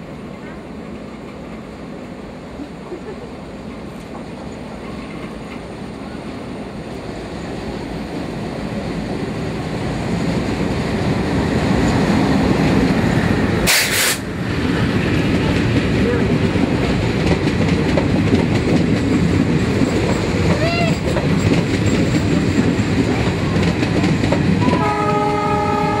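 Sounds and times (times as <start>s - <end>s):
train rumbling on rails: 0.0s - 26.0s
loud hiss: 13.6s - 14.3s.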